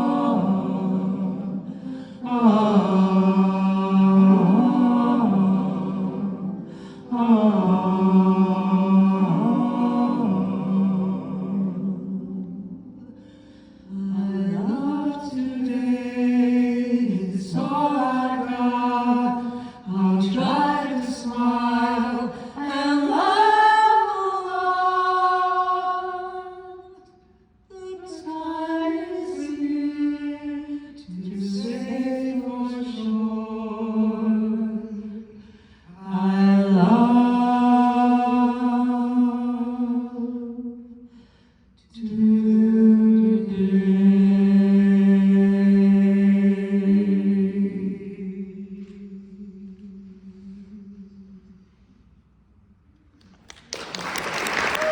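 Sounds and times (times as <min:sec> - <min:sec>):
short breath: 0:13.2 - 0:13.9, 0:35.4 - 0:36.0, 0:41.0 - 0:41.8.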